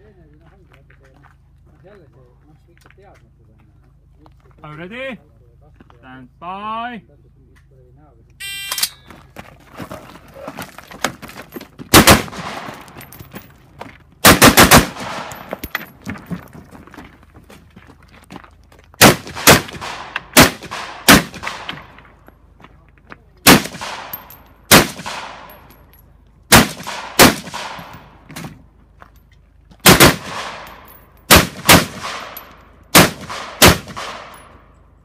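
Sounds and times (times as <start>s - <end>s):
rifle shots with echo: 11.9s - 13.0s, 14.2s - 15.5s, 19.0s - 22.0s, 23.4s - 25.7s, 26.5s - 28.2s, 29.8s - 34.6s.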